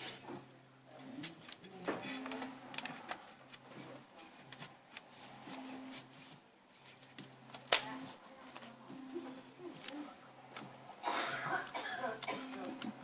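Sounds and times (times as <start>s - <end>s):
picture frame parts tapping and rustling: 0.0s - 5.6s, 6.8s - 7.9s.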